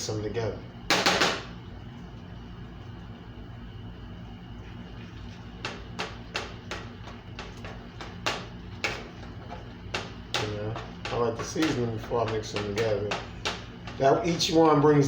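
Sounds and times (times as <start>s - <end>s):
steady low hum: 0.0s - 15.0s
utensils tapping a pan: 5.6s - 15.0s.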